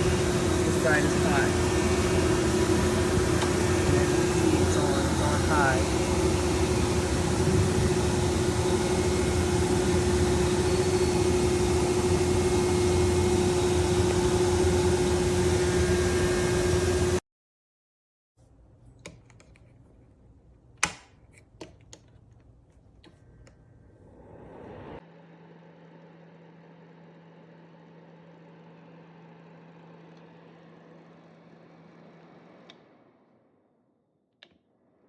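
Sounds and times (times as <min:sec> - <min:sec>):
heater fan rushing air: 0:00.0 - 0:17.2, 0:23.0 - 0:25.0.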